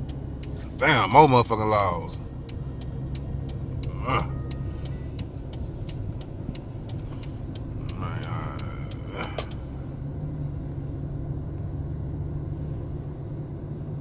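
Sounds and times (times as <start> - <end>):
car interior rumble: 0.0 - 14.0
faint voice: 3.9 - 4.4, 7.8 - 9.4.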